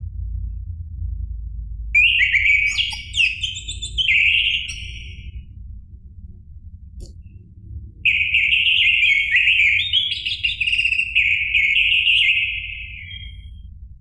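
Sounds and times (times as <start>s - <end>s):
steady low rumble: 0.0s - 14.0s
thrush singing whistled notes: 2.0s - 5.5s, 8.1s - 13.6s.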